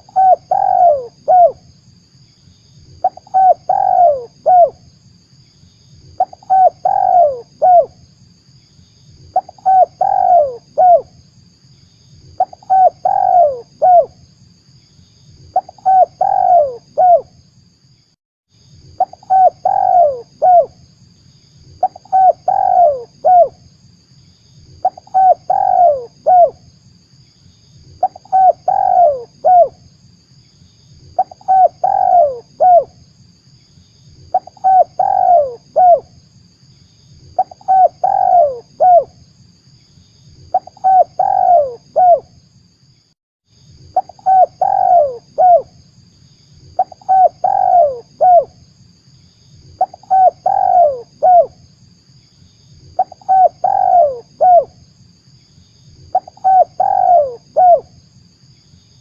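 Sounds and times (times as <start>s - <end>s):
dove cooing: 0.0s - 1.6s, 3.0s - 4.8s, 6.2s - 7.9s, 9.3s - 11.1s, 12.4s - 14.1s, 15.5s - 17.3s, 19.0s - 20.8s, 21.8s - 23.6s, 24.8s - 26.6s, 28.0s - 29.8s, 31.2s - 33.0s, 34.3s - 36.1s, 37.4s - 39.1s, 40.5s - 42.2s, 44.0s - 45.7s, 46.8s - 48.6s, 49.8s - 51.6s, 53.0s - 54.8s, 56.1s - 57.9s
faint steady hiss: 0.0s - 59.0s.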